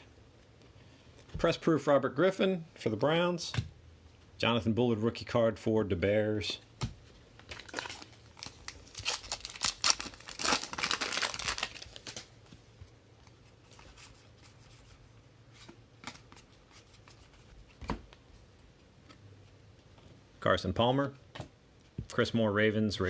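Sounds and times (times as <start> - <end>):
plastic wrapper tearing and crinkling: 7.4 - 12.3.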